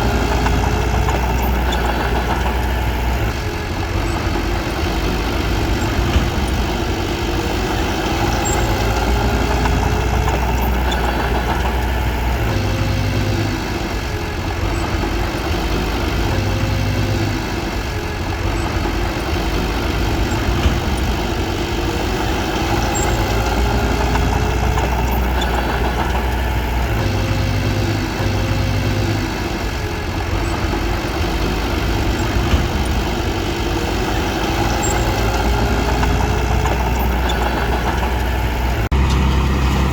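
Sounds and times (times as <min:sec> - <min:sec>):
bulldozer diesel engine running: 0:00.0 - 0:39.9.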